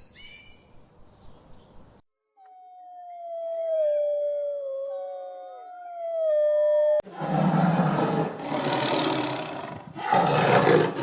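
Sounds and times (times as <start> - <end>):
wavering howl-like call: 2.4 - 7.0.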